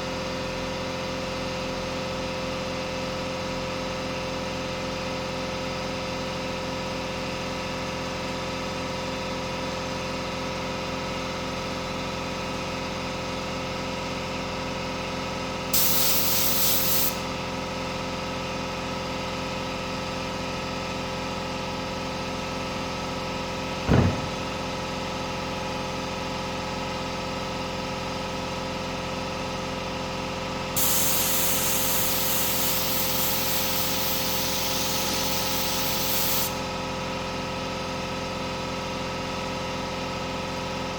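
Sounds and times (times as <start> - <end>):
hissing spray: 15.8 - 17.2, 30.8 - 36.6
sharp knock: 23.9 - 24.7.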